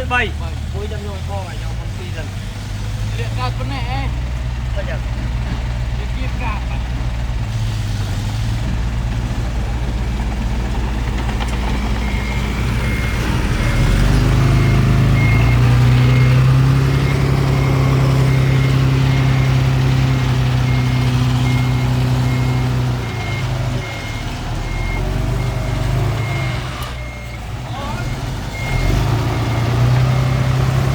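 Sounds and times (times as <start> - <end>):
heavy diesel engine revving: 0.0 - 30.9
reversing alarm beeping: 11.4 - 30.9.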